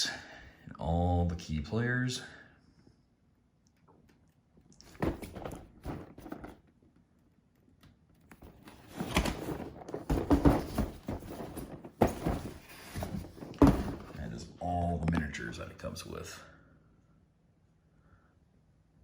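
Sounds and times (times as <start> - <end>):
boxes knocking and rustling: 4.8 - 6.7, 8.4 - 14.4.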